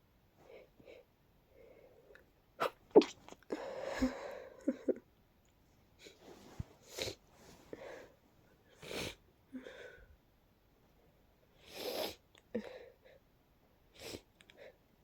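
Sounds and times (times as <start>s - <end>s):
person sneezing: 2.6s - 3.4s.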